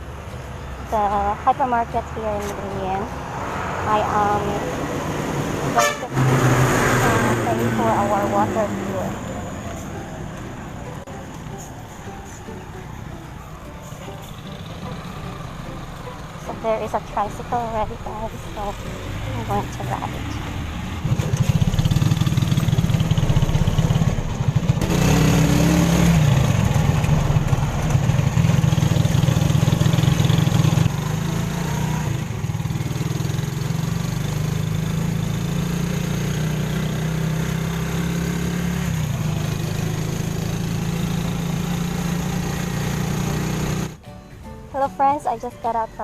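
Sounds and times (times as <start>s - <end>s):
motorcycle engine running: 14.0s - 44.0s.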